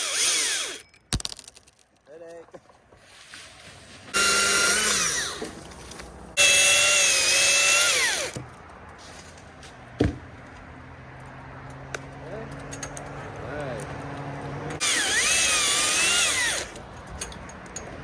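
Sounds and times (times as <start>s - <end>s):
chainsaw at full throttle: 4.2s - 5.4s, 6.4s - 8.4s, 14.8s - 16.7s
thump: 10.0s - 10.3s.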